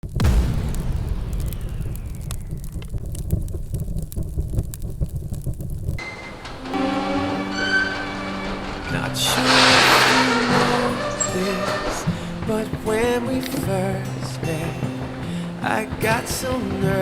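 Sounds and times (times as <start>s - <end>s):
sharp pops: 0.0s - 6.0s
fireworks crackling: 0.0s - 17.0s.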